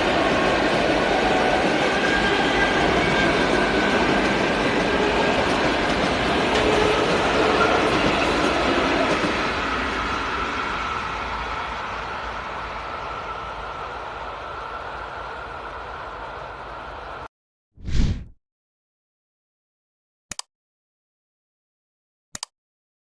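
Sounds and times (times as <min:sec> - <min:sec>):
train wheels on rails: 0:00.0 - 0:17.3.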